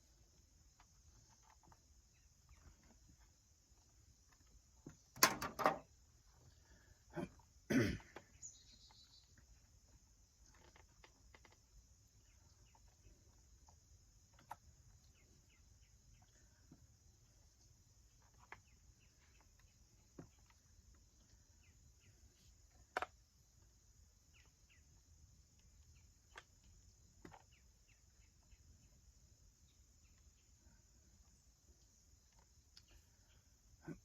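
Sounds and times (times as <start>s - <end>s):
insects chirping: 0.0s - 34.0s
person coughing: 7.1s - 8.2s.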